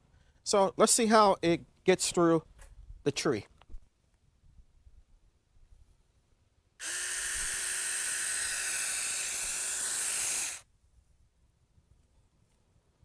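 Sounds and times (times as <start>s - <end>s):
electric chainsaw whirring: 6.8s - 10.6s.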